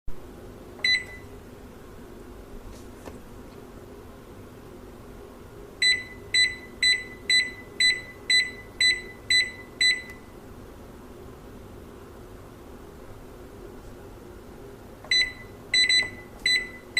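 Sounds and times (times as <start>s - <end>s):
microwave low hum: 0.1s - 16.9s
microwave oven beeping: 0.7s - 1.6s, 5.7s - 10.5s, 14.9s - 16.9s.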